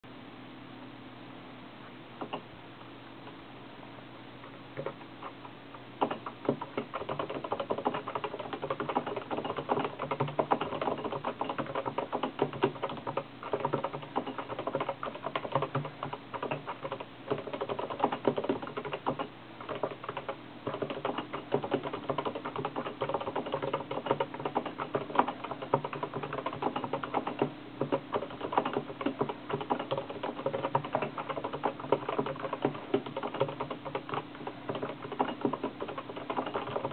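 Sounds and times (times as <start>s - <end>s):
fast typing on keyboard: 4.8s - 36.9s.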